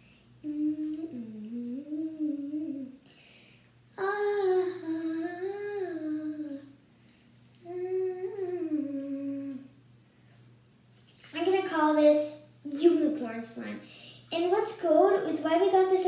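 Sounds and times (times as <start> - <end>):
young voice humming: 0.4 - 3.1, 4.0 - 6.8, 7.6 - 9.8.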